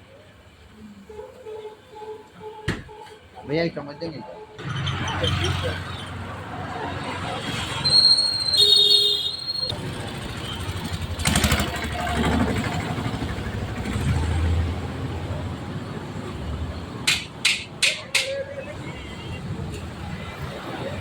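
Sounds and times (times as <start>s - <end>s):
motorcycles passing: 4.6s - 21.0s.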